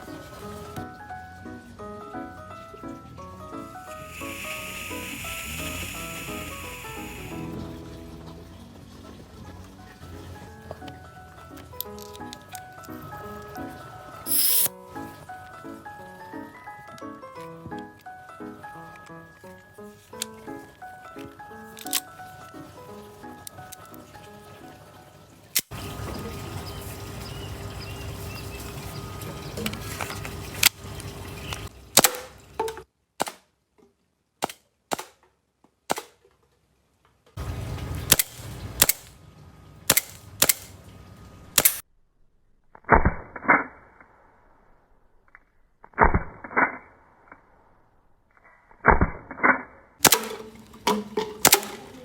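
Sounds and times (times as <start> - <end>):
airsoft pistol shots cracking: 32.0 - 32.3, 38.1 - 39.1, 39.9 - 40.7, 41.6 - 41.8, 50.0 - 50.5, 51.4 - 51.8.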